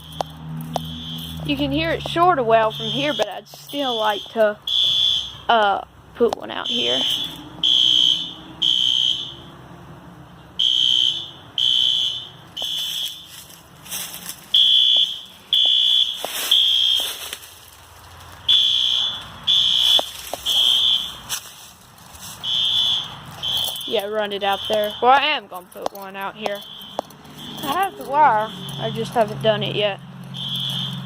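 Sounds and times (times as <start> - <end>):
fire alarm beeping: 0.0 - 1.5, 2.6 - 5.5, 6.6 - 9.5, 10.6 - 13.5, 14.5 - 17.1, 18.5 - 21.2, 22.4 - 25.4, 26.3 - 29.1, 30.4 - 31.0.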